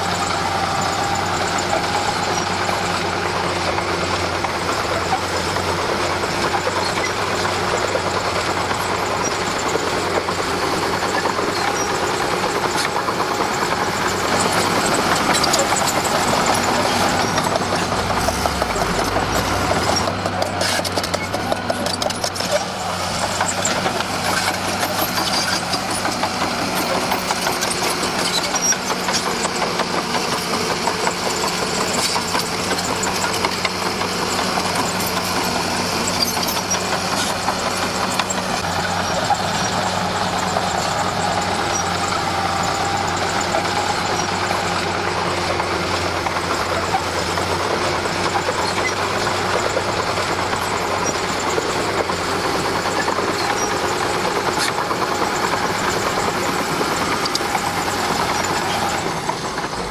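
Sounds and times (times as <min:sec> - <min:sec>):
bulldozer diesel engine running: 0:00.0 - 0:59.9
dense clatter: 0:02.4 - 0:37.5.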